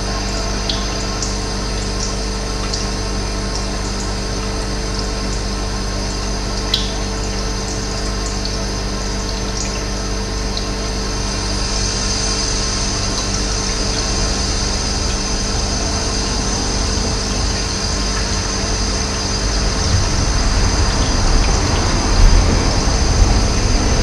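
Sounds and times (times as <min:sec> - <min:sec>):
running water flowing: 0:00.0 - 0:24.0
low rumble: 0:10.3 - 0:24.0.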